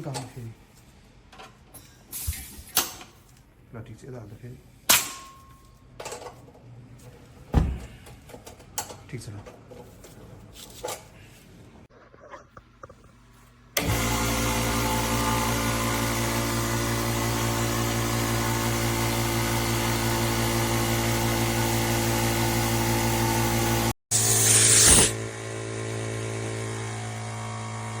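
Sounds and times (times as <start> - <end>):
air compressor running: 13.8 - 28.0.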